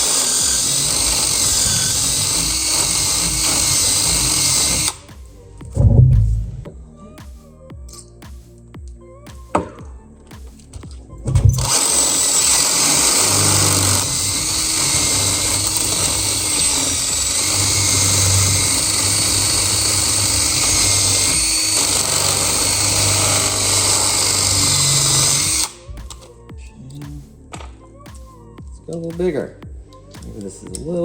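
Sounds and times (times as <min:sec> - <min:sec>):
power drill boring: 0:00.0 - 0:05.2, 0:11.4 - 0:26.2.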